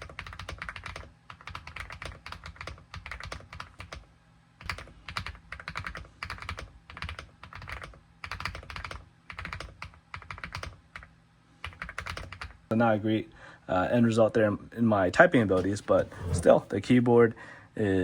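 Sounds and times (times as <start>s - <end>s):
mechanical keyboard typing: 0.0s - 4.0s, 4.6s - 12.6s.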